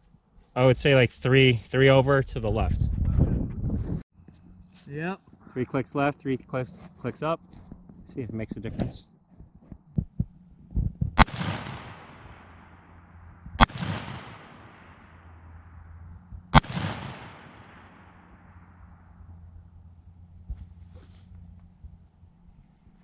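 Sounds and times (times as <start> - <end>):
rifle shots: 11.2 - 15.8, 16.5 - 19.0.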